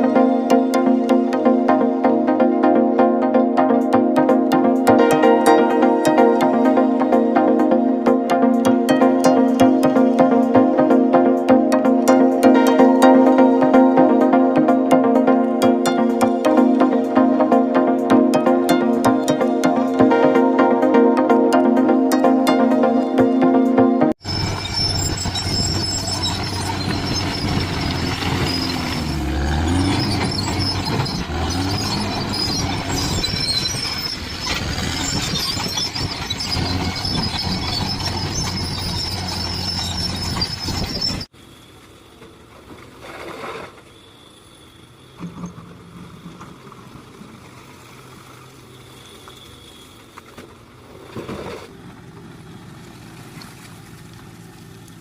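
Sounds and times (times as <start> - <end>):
low engine hum: 24.0 - 55.0
high metallic squealing: 24.2 - 41.3
heavy diesel machinery working: 24.2 - 42.6.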